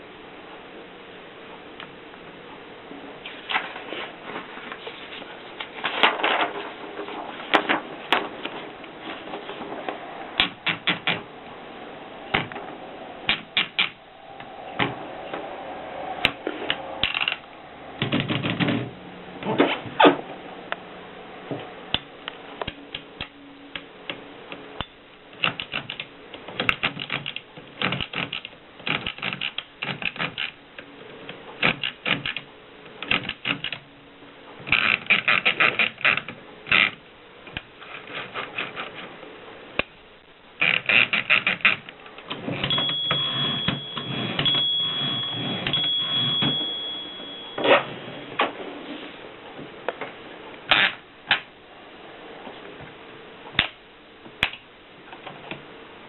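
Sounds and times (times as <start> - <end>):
thin steady high tone: 10.0 - 19.4, 42.6 - 48.4.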